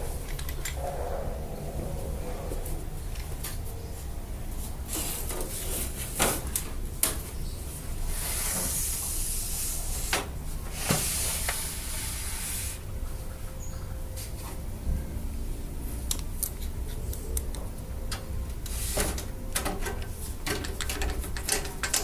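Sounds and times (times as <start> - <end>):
scraping and rustling: 0.0 - 8.9.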